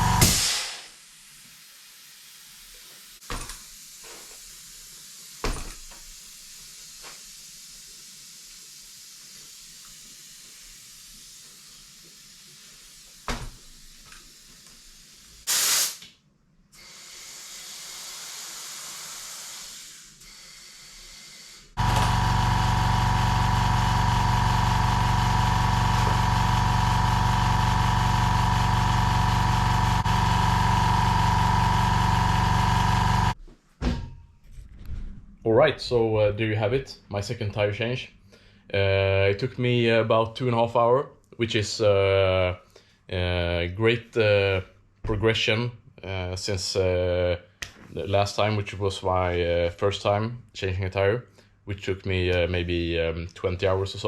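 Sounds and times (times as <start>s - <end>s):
loud machine hum: 0.0s - 0.6s, 21.8s - 33.4s
compressed air hissing: 0.0s - 16.0s, 16.8s - 21.9s.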